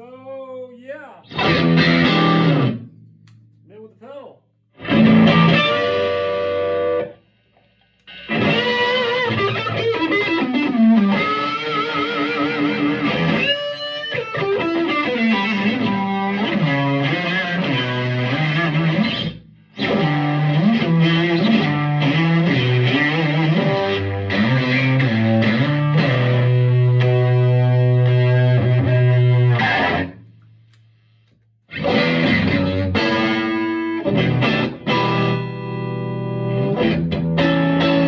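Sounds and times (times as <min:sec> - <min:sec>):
overdriven electric guitar: 0:01.2 - 0:03.6, 0:04.8 - 0:30.6, 0:31.7 - 0:38.0.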